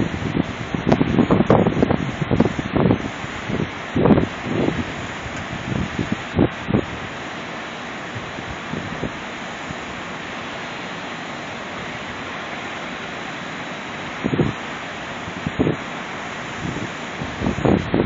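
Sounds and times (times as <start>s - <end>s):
wind on microphone: 0.0s - 7.2s, 8.1s - 9.8s, 14.1s - 18.0s
wind buffets: 0.0s - 7.3s, 8.0s - 10.0s, 13.9s - 18.0s.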